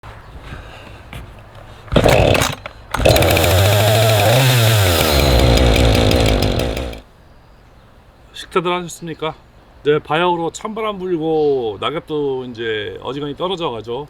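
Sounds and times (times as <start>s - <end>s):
chainsaw engine running: 2.0s - 7.0s.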